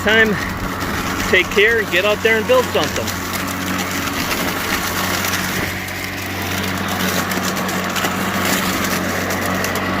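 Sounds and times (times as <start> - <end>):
electric lawn mower humming: 0.0 - 10.0
leaves crackling through mower: 0.0 - 10.0.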